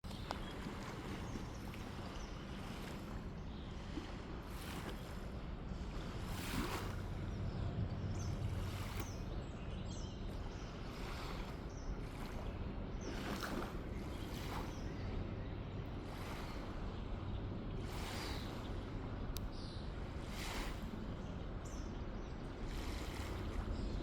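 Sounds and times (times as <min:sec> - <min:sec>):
water lapping and splashing: 0:00.0 - 0:24.0
low rumble: 0:05.7 - 0:10.9.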